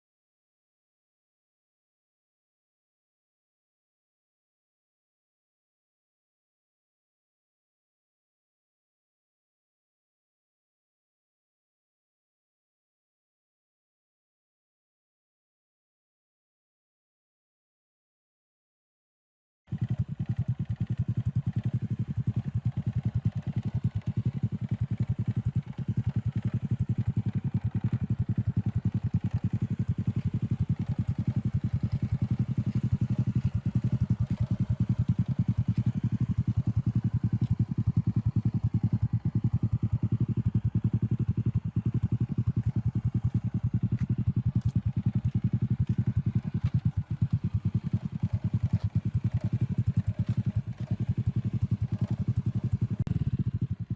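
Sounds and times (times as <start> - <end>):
small motorbike engine running: 19.7 - 53.9.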